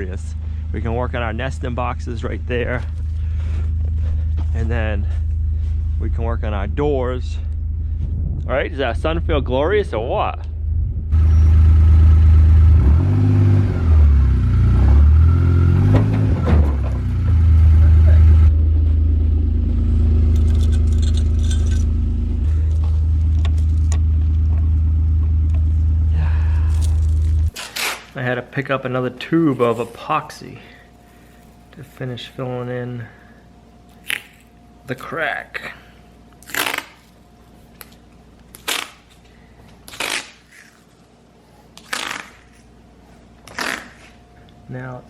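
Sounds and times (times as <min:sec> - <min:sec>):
vehicle engine idling: 0:00.0 - 0:13.1, 0:13.8 - 0:27.6
light metallic clinking: 0:20.3 - 0:22.0.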